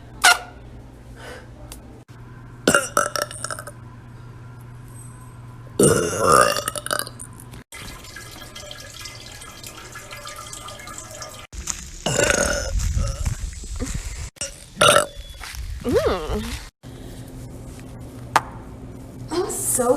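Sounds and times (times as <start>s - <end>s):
woman burping: 2.7s - 3.7s, 5.8s - 7.2s, 12.0s - 13.2s, 14.8s - 15.2s.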